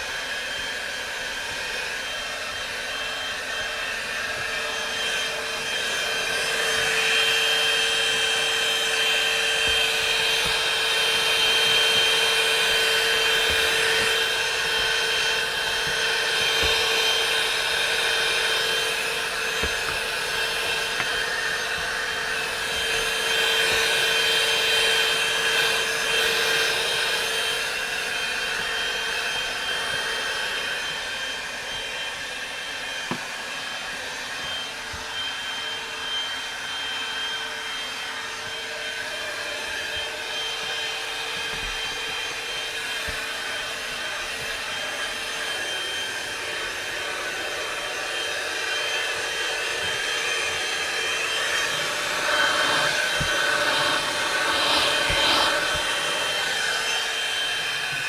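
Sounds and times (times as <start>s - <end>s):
handheld vacuum cleaner running: 0.0s - 58.0s.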